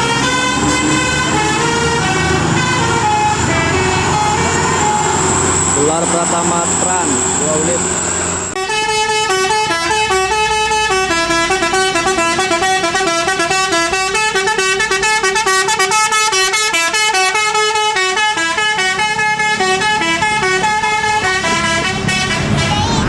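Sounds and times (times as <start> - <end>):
bus multi-tone horn melody: 0.0 - 23.0.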